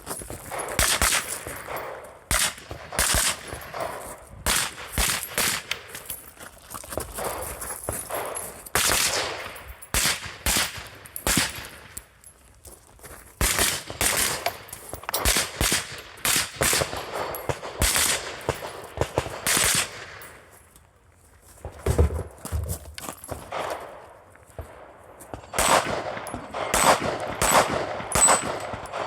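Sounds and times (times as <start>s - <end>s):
gunshots: 0.5s - 5.9s, 8.1s - 11.9s, 13.4s - 20.3s, 24.6s - 29.0s.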